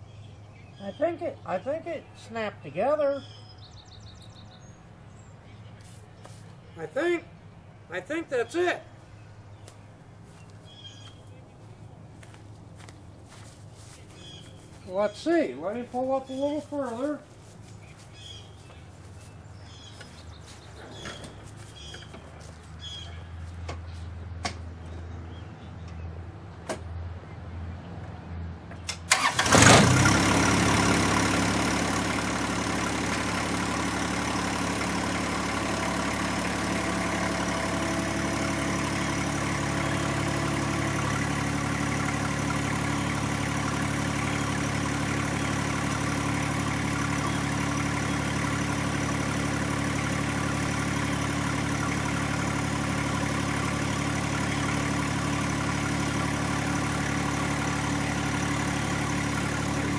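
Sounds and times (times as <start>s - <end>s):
tractor diesel engine starting: 28.8s - 59.9s.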